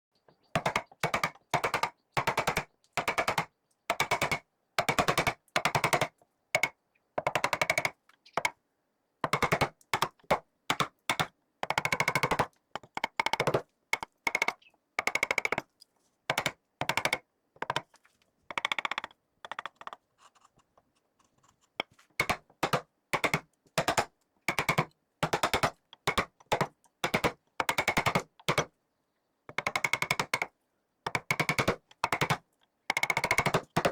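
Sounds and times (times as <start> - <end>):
power carving tool hammering wood: 0.6 - 7.9, 31.1 - 33.9.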